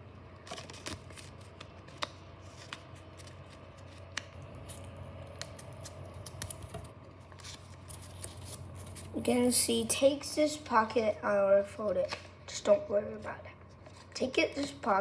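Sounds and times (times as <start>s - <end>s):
faint low hum: 0.0s - 15.0s
paper rustling and crackling: 0.4s - 9.2s, 13.7s - 14.8s.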